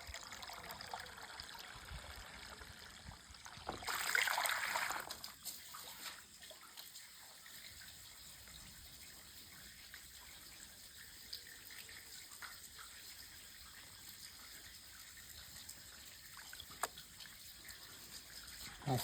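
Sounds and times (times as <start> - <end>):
faint trickling water: 0.0 - 19.0.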